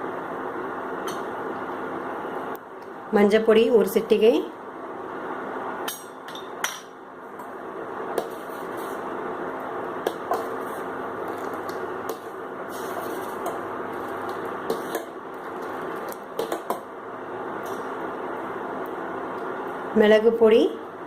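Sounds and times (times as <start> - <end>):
milk boiling in a pan: 7.2 - 19.9.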